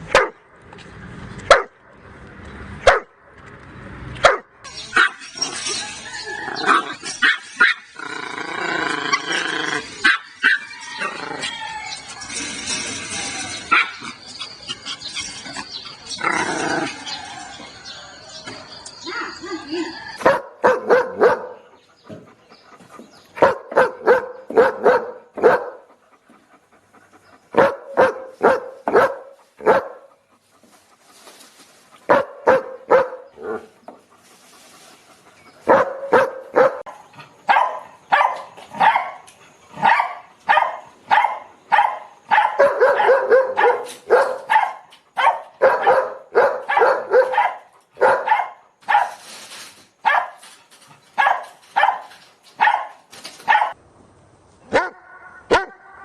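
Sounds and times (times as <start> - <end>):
dog barking angrily: 0.0 - 0.4, 1.5 - 1.8, 2.8 - 3.2, 4.2 - 5.2, 20.2 - 21.7, 23.4 - 25.9, 27.5 - 30.1, 32.1 - 33.7, 35.6 - 49.2, 50.0 - 50.4, 51.2 - 53.8, 54.7 - 55.8.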